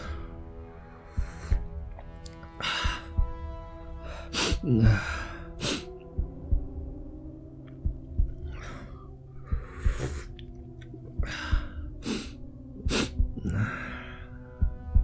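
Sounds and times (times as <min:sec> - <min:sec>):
low drone: 0:00.0 - 0:15.0
heartbeat sound effect: 0:01.2 - 0:02.1, 0:02.7 - 0:03.7, 0:04.4 - 0:05.3, 0:06.1 - 0:13.8, 0:14.5 - 0:15.0.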